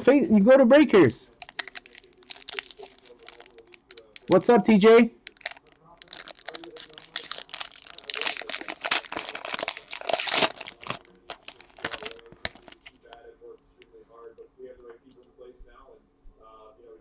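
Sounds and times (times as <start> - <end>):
card pack wrappers crinkling and tearing: 1.3 - 13.2.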